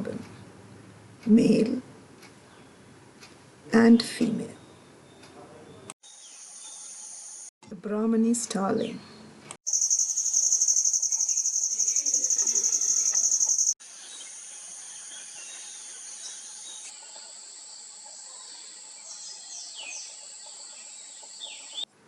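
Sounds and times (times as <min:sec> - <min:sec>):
insects trilling: 0:06.0 - 0:07.5, 0:09.7 - 0:21.2
high-pitched insect drone: 0:09.7 - 0:18.2.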